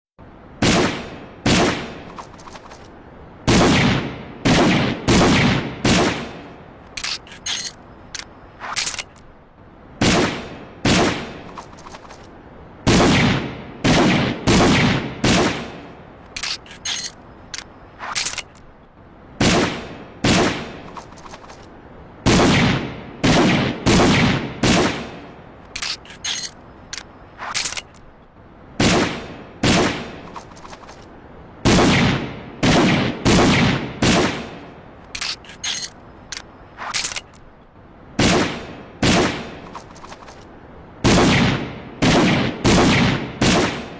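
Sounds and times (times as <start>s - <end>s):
revolver gunshots with echo: 0.6s - 2.1s, 3.5s - 6.5s, 10.0s - 11.5s, 12.9s - 15.9s, 19.4s - 20.9s, 22.2s - 25.3s, 28.8s - 30.3s, 31.6s - 34.6s, 38.2s - 39.7s, 41.0s - 43.9s.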